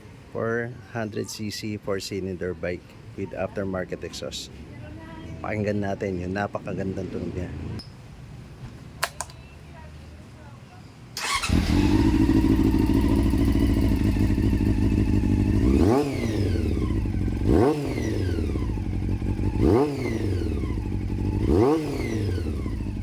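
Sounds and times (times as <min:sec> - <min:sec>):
motorcycle engine idling and revving: 0:04.2 - 0:07.8, 0:11.2 - 0:23.0.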